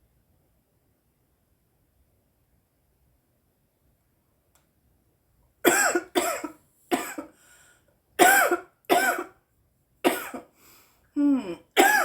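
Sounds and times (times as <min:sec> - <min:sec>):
woman coughing: 0:05.7 - 0:07.3, 0:08.2 - 0:09.4, 0:10.1 - 0:10.5, 0:11.4 - 0:12.0.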